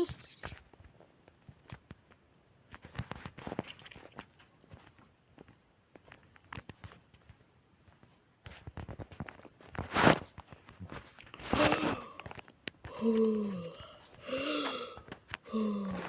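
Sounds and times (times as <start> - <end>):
breathy noise: 11.4 - 16.0.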